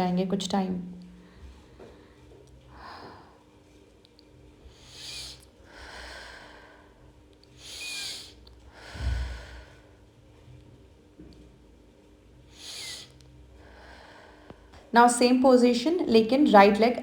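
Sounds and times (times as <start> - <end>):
person breathing deeply through nose: 7.6 - 9.9, 12.5 - 14.6.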